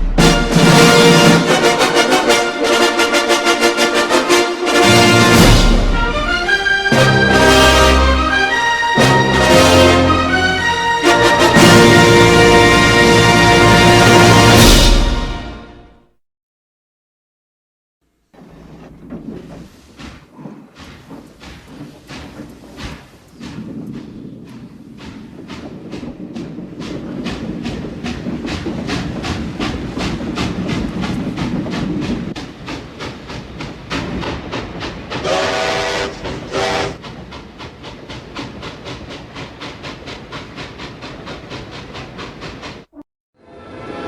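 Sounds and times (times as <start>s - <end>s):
low train rumble: 0.0s - 16.0s, 18.1s - 44.0s
train horn blasts: 0.0s - 16.0s, 35.2s - 37.0s
train wheels clacking on rails: 18.4s - 43.0s.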